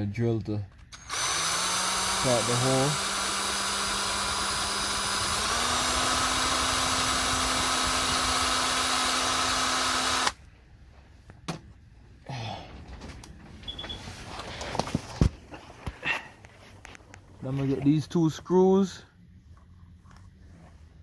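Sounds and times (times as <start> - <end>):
electric drill running: 0.9 - 10.4.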